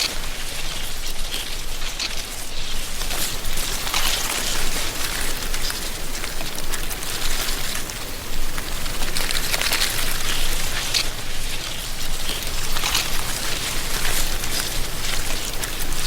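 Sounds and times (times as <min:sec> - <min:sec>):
wind rustling dry leaves: 0:00.0 - 0:16.0.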